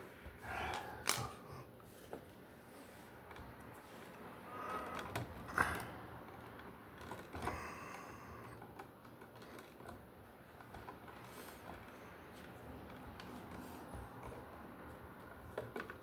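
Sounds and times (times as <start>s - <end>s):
hand tools clicking on wires: 0.6s - 1.5s.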